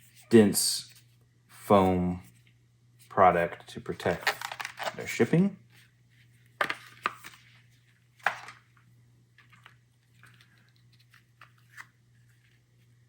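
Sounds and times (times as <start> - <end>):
packaging clicks and scrapes: 4.0 - 5.1.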